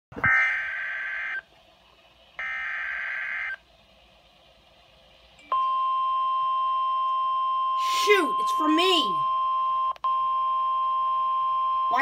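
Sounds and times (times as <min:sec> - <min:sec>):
buzzy data tone bursts: 0:00.3 - 0:01.5, 0:02.4 - 0:03.6
steady warning alert tone: 0:05.4 - 0:12.0.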